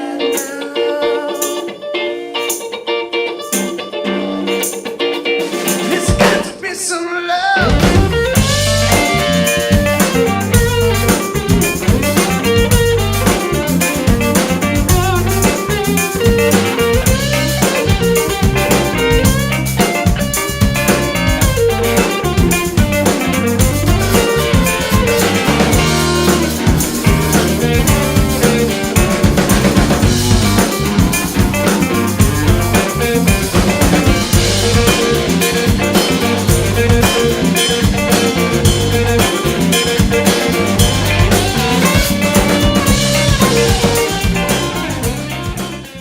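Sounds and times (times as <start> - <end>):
guitar: 0.0 - 46.0
drum kit: 3.4 - 6.9, 7.5 - 46.0
bass: 7.6 - 46.0.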